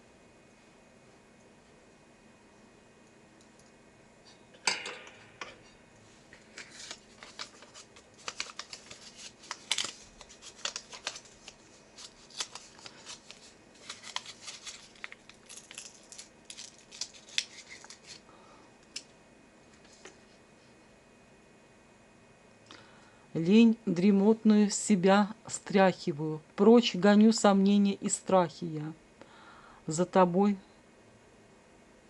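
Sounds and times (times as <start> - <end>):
paper rustling: 6.5 - 18.2.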